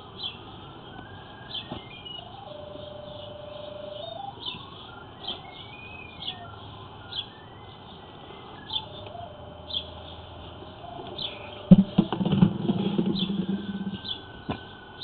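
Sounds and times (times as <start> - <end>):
stepped electronic tone: 10.6 - 14.2.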